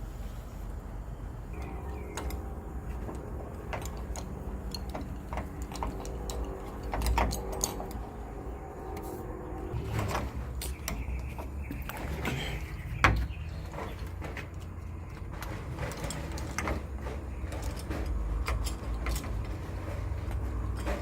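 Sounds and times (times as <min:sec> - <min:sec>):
steady hum: 0:00.0 - 0:13.0
metallic clicks of lock parts: 0:01.6 - 0:08.2, 0:15.4 - 0:21.0.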